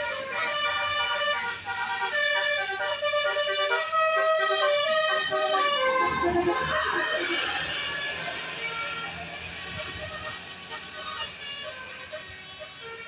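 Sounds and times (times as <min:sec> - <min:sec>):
multi-tone bus air horn melody: 0:00.0 - 0:13.0.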